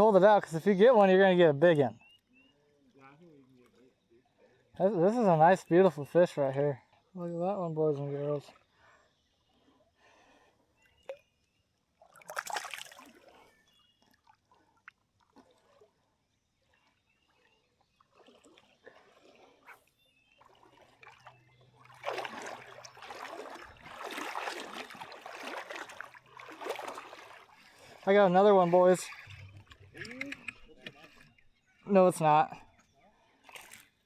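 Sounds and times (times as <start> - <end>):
creek water splashing: 11.9 - 32.8, 33.4 - 34.0.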